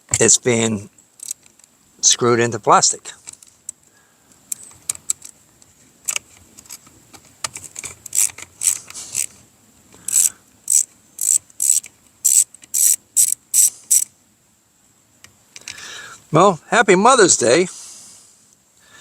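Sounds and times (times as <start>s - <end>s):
ratchet clicking: 1.2s - 1.6s, 7.6s - 9.3s, 10.1s - 14.1s.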